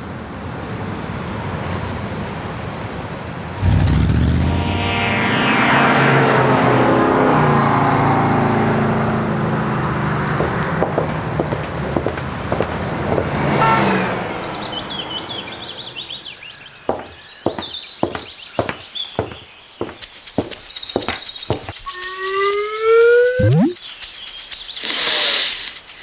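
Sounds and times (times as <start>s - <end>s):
loud engine-like rushing: 3.6s - 11.0s
birds chirping: 14.0s - 26.0s
sharp taps: 16.9s - 26.0s.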